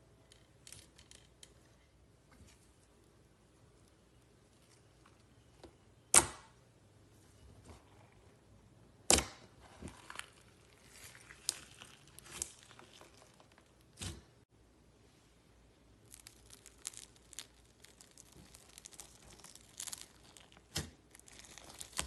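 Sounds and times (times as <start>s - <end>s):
slime crackling: 9.6s - 14.2s, 16.0s - 22.0s
slime popping: 16.0s - 22.0s.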